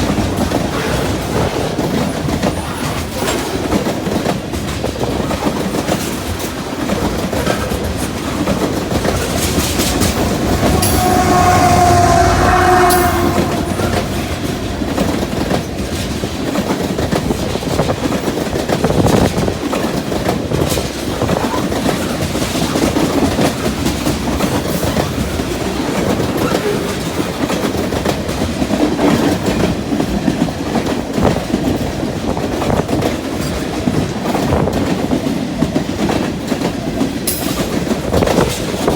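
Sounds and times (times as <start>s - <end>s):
freight train rumbling: 0.0s - 38.9s
wheels clacking over rail joints: 0.0s - 38.9s
pitched tone: 10.5s - 15.6s.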